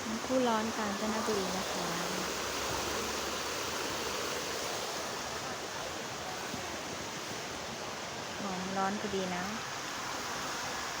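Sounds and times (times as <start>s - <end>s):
stream and small waterfall: 0.0s - 11.0s.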